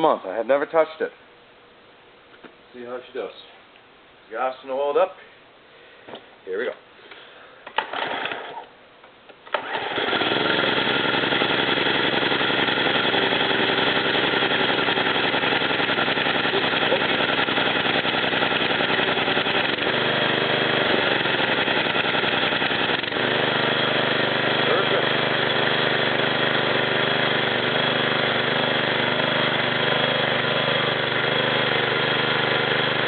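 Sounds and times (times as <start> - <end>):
mower engine starting and running: 7.8 - 8.6, 9.4 - 33.0.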